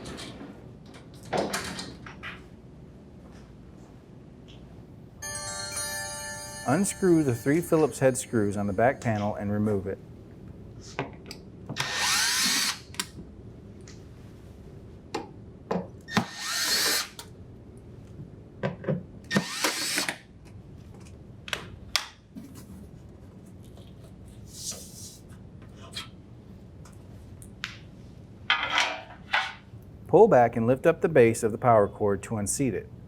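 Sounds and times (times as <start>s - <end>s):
cordless drill motor whine: 11.8s - 12.8s, 16.1s - 17.2s, 19.3s - 20.1s.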